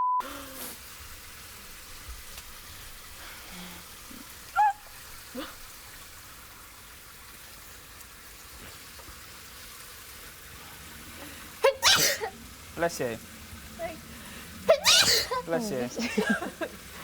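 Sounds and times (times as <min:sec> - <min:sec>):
steady faint hiss: 0:00.3 - 0:17.0
high-pitched vocal cry: 0:04.5 - 0:05.6, 0:11.6 - 0:12.4, 0:14.6 - 0:15.8.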